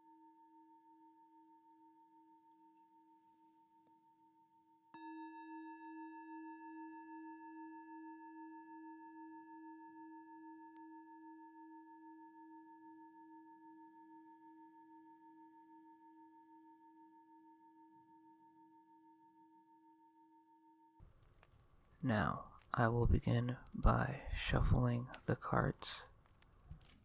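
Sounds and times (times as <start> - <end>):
singing bowl ringing: 0.0 - 21.0.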